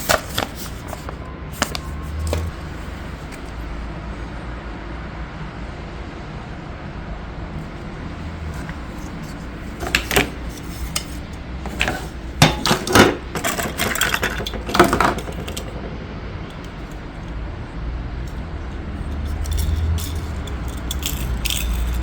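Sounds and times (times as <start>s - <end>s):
plastic toy pieces clicking: 19.1s - 22.0s.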